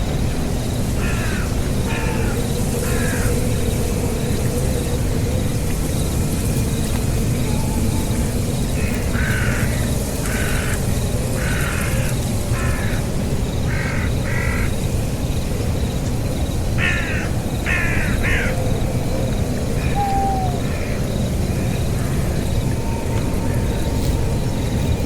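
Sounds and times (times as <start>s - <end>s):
harsh raspy animal calls: 19.8s - 20.9s.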